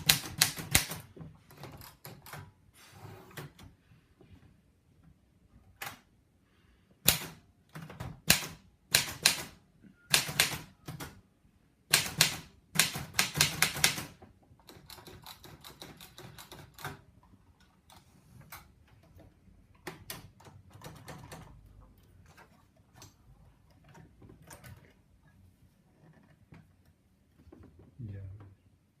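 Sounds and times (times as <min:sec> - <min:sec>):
typewriter keys clacking: 0:12.0 - 0:17.0.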